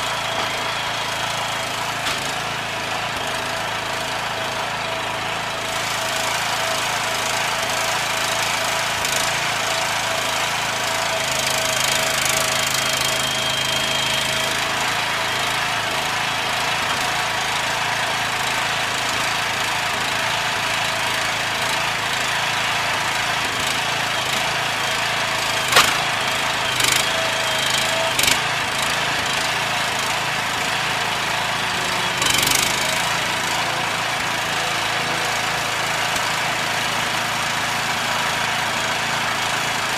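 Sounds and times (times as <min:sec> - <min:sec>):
small engine running: 0:00.0 - 0:39.9
sharp knocks: 0:25.7 - 0:26.1.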